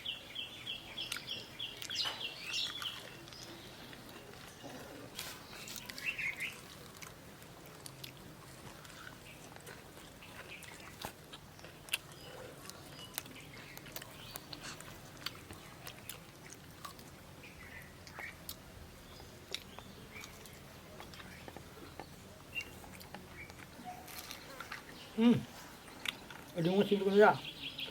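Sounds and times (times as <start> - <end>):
person chewing crunchy food: 0.9 - 26.6.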